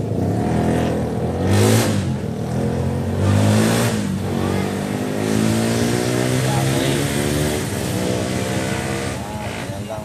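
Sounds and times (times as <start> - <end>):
engine revving: 0.0 - 10.0.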